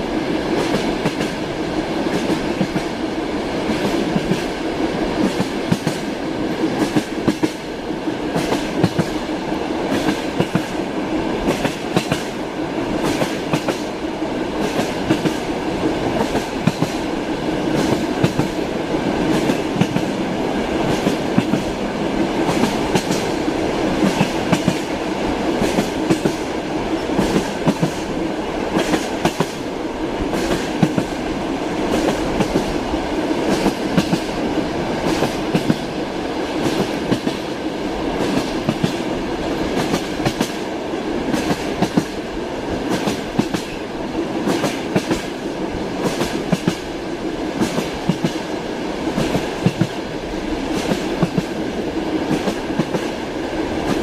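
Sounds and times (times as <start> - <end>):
rumble of moving train: 0.0 - 54.0
train wheels clacking over rail joints: 5.2 - 7.7, 8.3 - 9.2, 9.9 - 10.8, 11.4 - 13.9, 14.5 - 18.6, 19.2 - 20.2, 20.8 - 21.8, 22.4 - 29.7, 30.3 - 31.2, 31.9 - 32.8, 33.5 - 34.4, 35.0 - 35.9, 36.6 - 37.5, 38.2 - 39.0, 39.7 - 40.6, 41.3 - 42.2, 42.8 - 43.8, 44.4 - 45.4, 46.0 - 46.9, 47.6 - 48.4, 49.1 - 50.1, 50.7 - 51.6.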